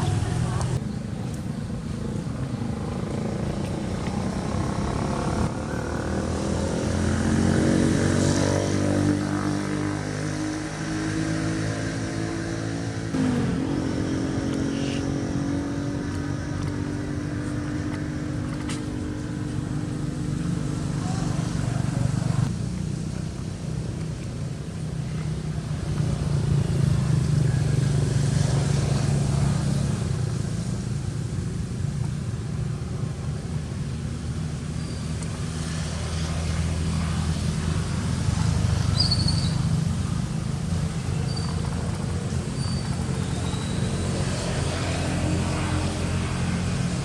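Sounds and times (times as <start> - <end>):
motor vehicle engine running: 0.0 - 30.7.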